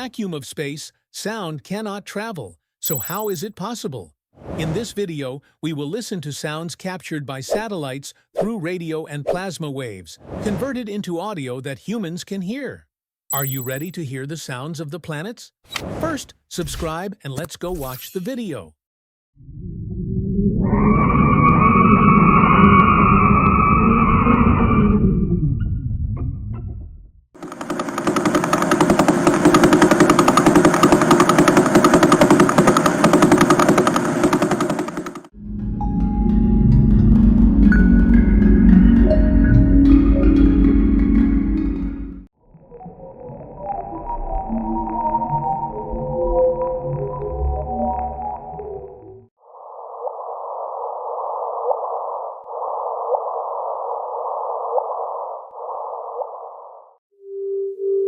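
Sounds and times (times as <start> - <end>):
layered ambient tones: 2.8 - 3.5
short rising chirps: 2.8 - 3.5, 13.3 - 13.9.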